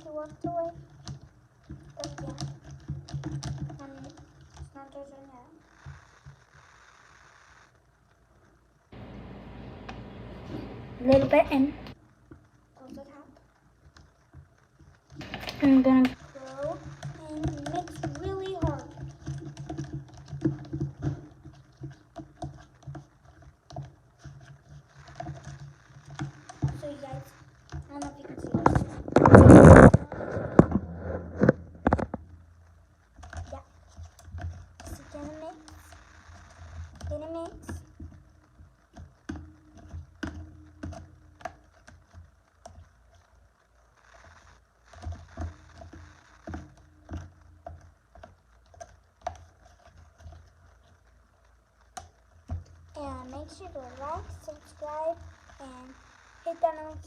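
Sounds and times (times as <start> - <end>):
spoon stirring slime: 12.4 - 32.0, 33.1 - 43.2, 44.9 - 51.1.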